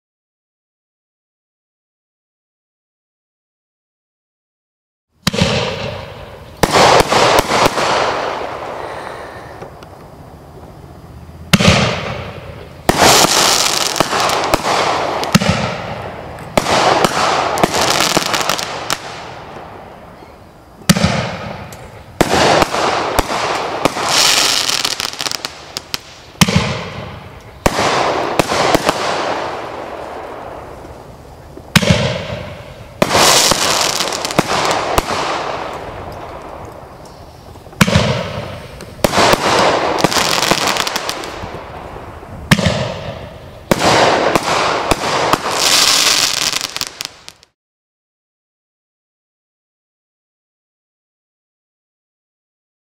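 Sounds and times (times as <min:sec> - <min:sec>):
firework aerial shot bangs: 0:05.2 - 0:08.7, 0:11.5 - 0:19.2, 0:20.9 - 0:30.0, 0:31.7 - 0:35.8, 0:37.8 - 0:41.4, 0:42.5 - 0:47.5
firework crackle: 0:05.2 - 0:47.6.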